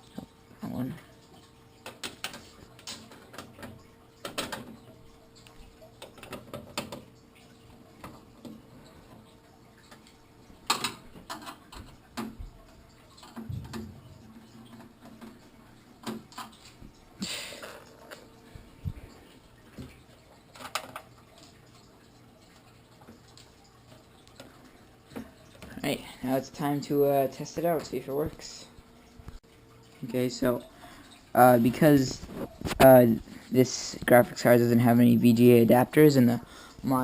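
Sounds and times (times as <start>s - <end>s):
computer parts clicking and knocking: 1.8s - 4.9s, 6.0s - 7.1s, 13.2s - 15.4s, 19.7s - 21.8s.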